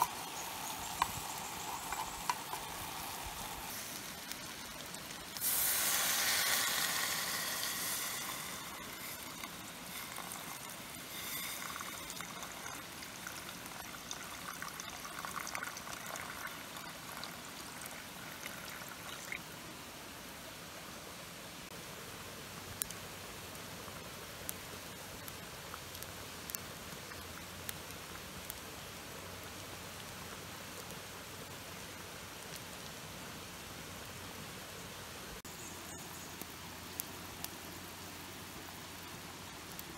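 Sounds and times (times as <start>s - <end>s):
liquid poured into a pot: 4.3s - 19.4s.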